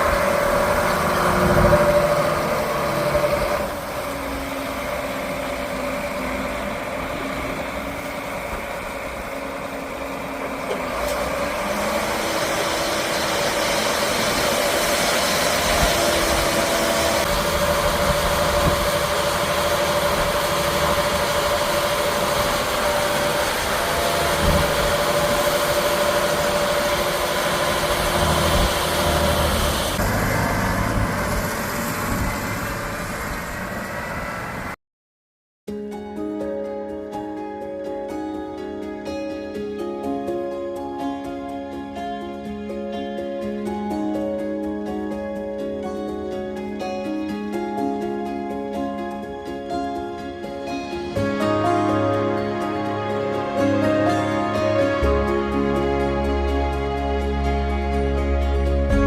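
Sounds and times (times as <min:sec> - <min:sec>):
farm machinery engine running: 0:00.0 - 0:34.8, 0:48.8 - 0:59.0
steady whine: 0:00.0 - 0:34.8.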